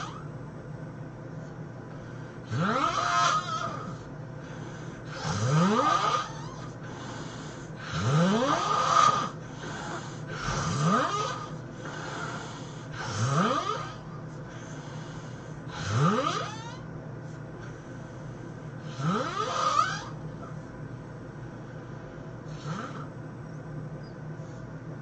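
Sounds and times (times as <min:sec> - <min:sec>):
person snoring: 0:02.4 - 0:16.8, 0:18.8 - 0:20.2, 0:22.5 - 0:23.1.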